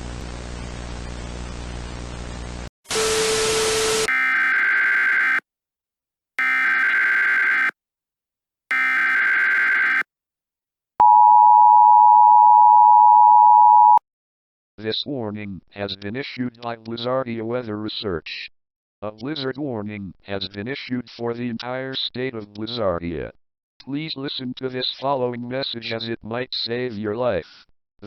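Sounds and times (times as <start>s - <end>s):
static with hum: 0.0s - 2.7s
digital header tones: 6.4s - 7.7s, 8.7s - 10.0s, 11.0s - 14.0s
two-tone attention signal: 11.0s - 14.0s.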